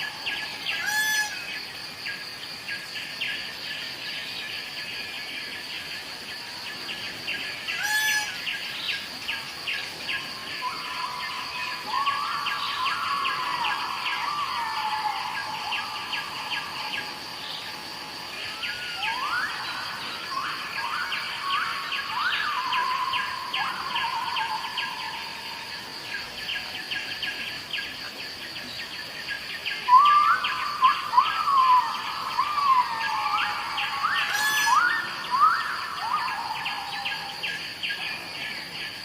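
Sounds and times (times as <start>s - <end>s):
shrill insect chorus: 0.0s - 39.0s
peacock call: 0.7s - 1.4s, 7.8s - 8.4s, 29.9s - 37.3s.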